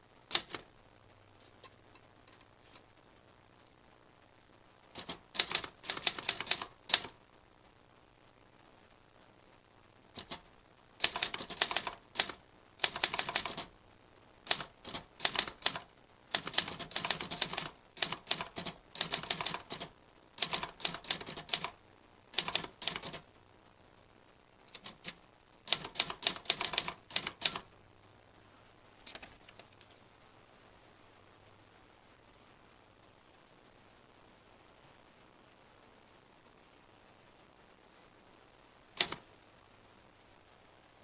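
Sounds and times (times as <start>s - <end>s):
typewriter keys clicking: 0.3s - 0.6s, 5.0s - 7.2s, 10.2s - 10.4s, 11.0s - 13.7s, 14.5s - 23.2s, 24.7s - 27.8s, 39.0s - 39.2s.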